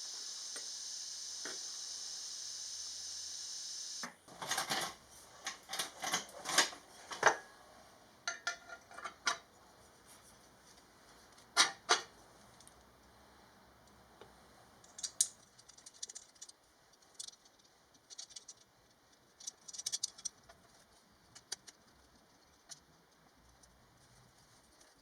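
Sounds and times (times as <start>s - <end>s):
steady hiss: 0.0s - 4.3s.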